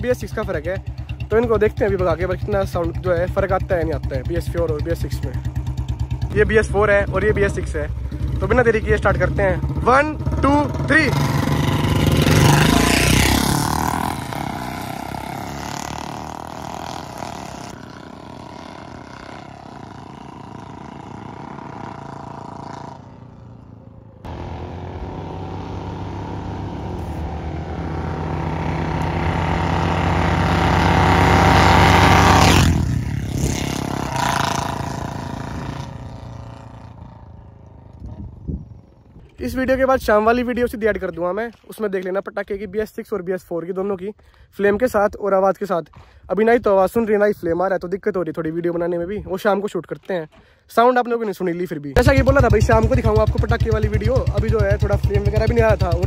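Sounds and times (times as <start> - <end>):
motorcycles passing: 0.0 - 39.3, 52.0 - 56.0.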